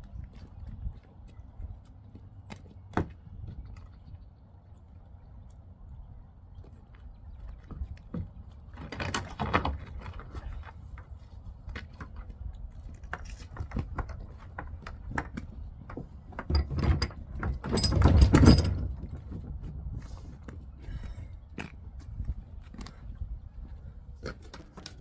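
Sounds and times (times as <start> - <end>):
knocks rattles and scraping: 8.1 - 11.2, 12.9 - 20.6.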